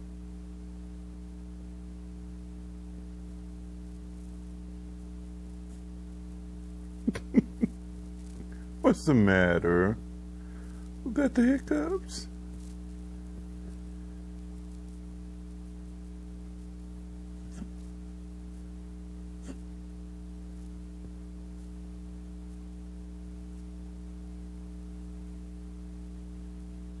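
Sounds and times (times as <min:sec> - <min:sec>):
steady electrical hum: 0:00.0 - 0:27.0.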